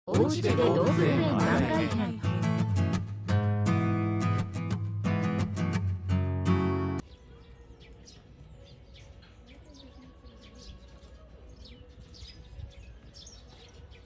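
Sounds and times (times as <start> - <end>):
faint outdoor background noise: 0.1 - 14.0
small birds chirping: 4.2 - 14.0.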